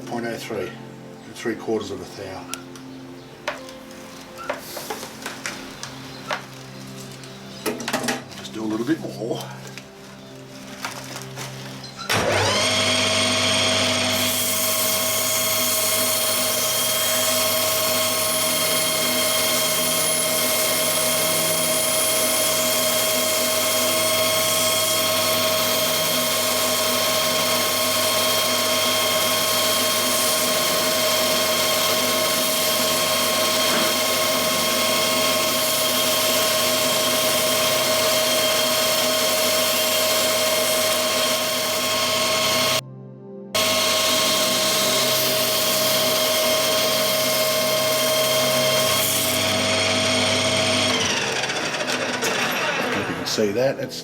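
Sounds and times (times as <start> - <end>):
machine tool whining: 12.1 - 42.8, 43.6 - 53.4.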